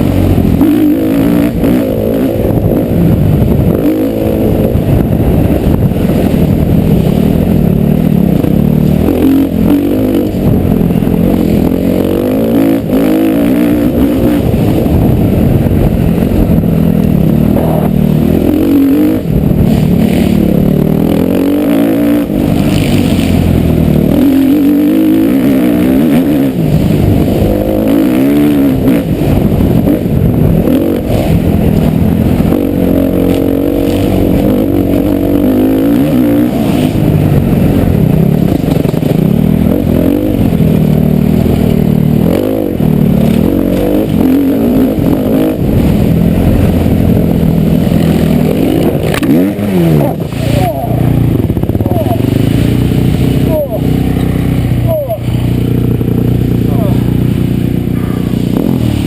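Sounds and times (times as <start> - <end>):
motocross bike engine revving: 0.0 - 59.0.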